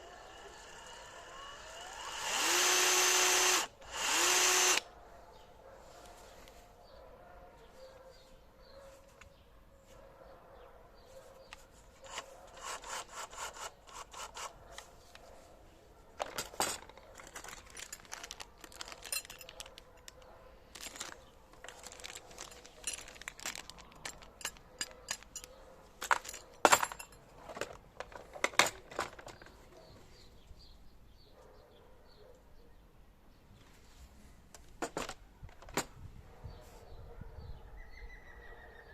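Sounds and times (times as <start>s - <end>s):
packaging rubbing and scraping: 16.2s - 20.2s, 20.8s - 24.6s.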